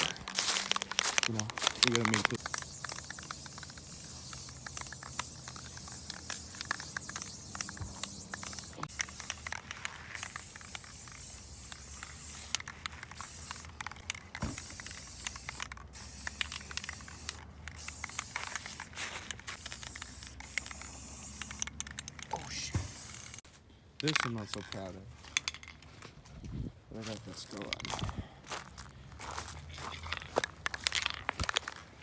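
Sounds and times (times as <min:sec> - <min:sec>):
spray paint can hissing: 0:00.4 - 0:23.4.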